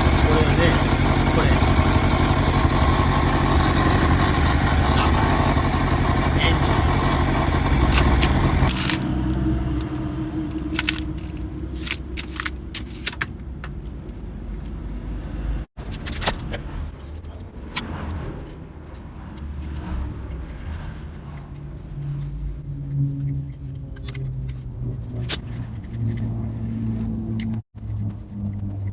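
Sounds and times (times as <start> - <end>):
motorcycle engine running: 0.0 - 15.6
low hum: 0.0 - 15.7.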